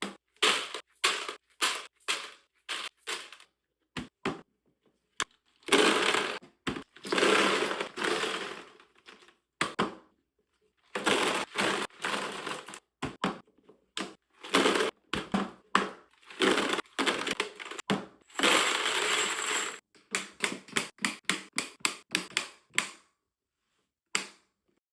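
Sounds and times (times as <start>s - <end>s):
ammunition rattling and rustling: 0.4s - 3.5s.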